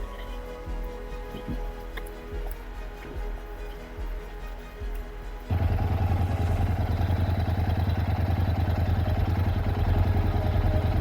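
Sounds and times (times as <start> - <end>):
soft background music: 0.0 - 11.0
motorcycle engine rumbling: 5.4 - 11.0.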